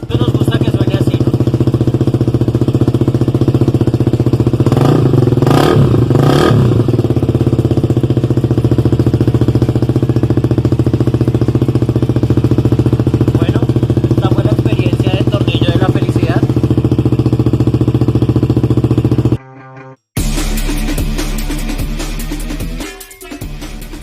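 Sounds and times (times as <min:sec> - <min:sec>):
motorcycle engine idling: 0:00.0 - 0:19.4
motorcycle throttle blips: 0:00.0 - 0:19.4.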